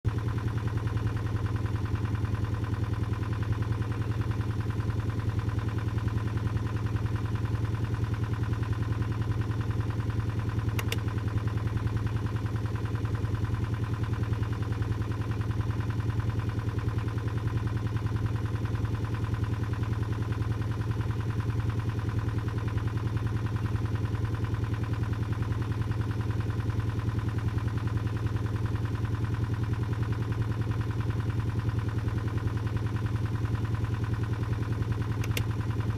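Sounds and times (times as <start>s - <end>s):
engine idling: 0.1s - 35.9s
faint click: 10.8s - 11.1s, 35.2s - 35.5s.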